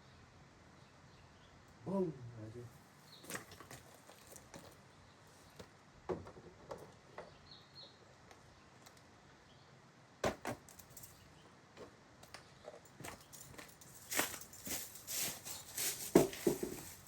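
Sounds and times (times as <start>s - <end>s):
bird chirp: 7.1s - 9.8s.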